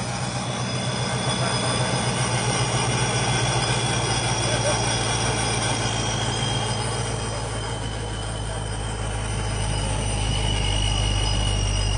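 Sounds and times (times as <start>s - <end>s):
car engine droning: 0.0s - 11.9s.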